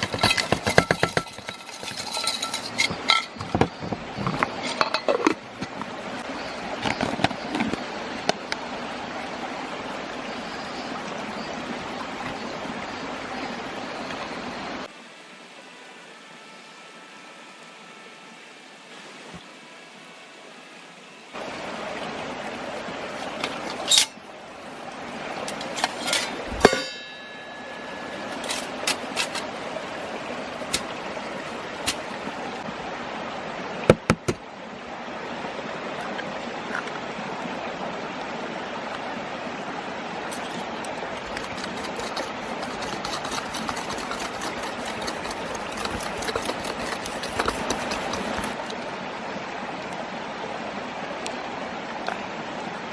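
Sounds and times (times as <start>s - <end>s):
mountain stream running: 0.0s - 52.9s.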